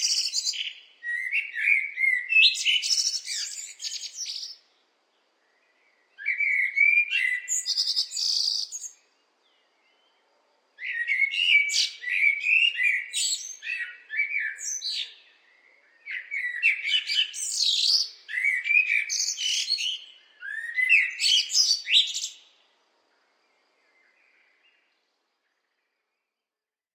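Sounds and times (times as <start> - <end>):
blackbird singing: 0.0 - 22.6.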